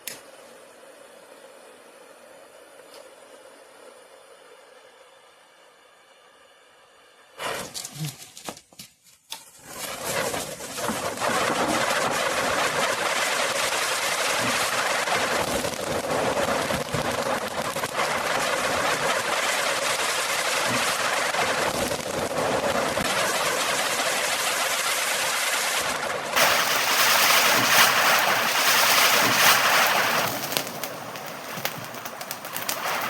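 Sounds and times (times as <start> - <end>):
fountain firework hissing: 7.4 - 7.9, 9.6 - 33.0
small crackles: 26.4 - 33.0.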